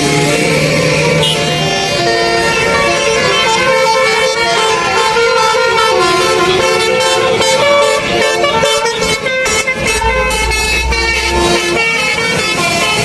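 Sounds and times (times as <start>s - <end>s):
bus horns playing a melody: 0.0s - 13.0s
low rumble: 9.6s - 12.0s.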